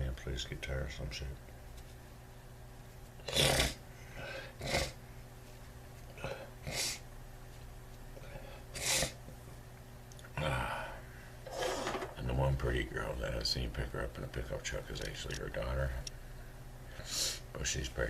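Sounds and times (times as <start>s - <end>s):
low electrical hum: 0.0s - 18.0s
person breathing: 3.9s - 4.6s, 10.4s - 12.0s.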